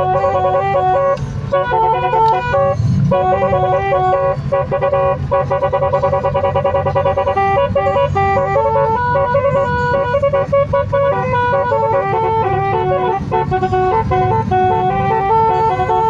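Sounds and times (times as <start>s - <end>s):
bus air horn melody: 0.0s - 16.0s
low rumble: 1.0s - 6.8s.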